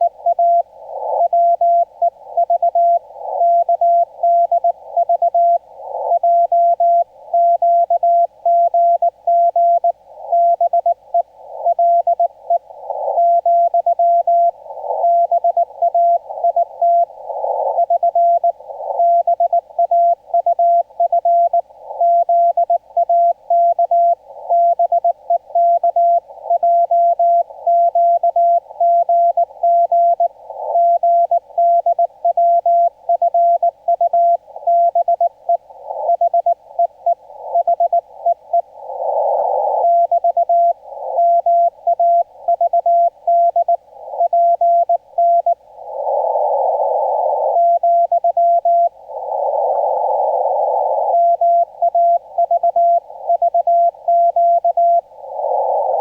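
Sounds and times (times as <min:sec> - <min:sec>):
radio hiss: 0:00.0 - 0:56.0.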